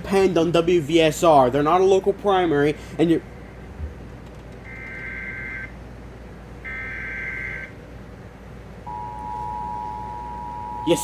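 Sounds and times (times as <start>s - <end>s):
two-tone attention signal: 8.9s - 11.0s.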